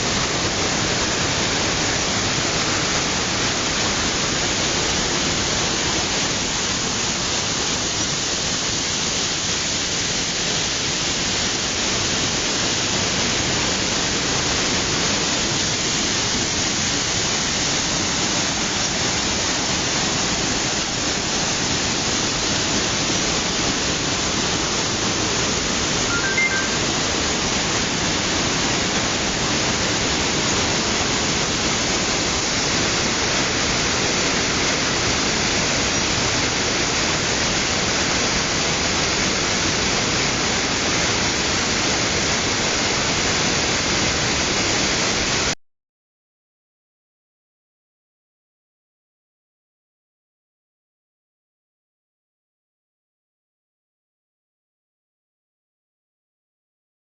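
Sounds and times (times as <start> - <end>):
waterfall rushing: 0.0 - 45.5.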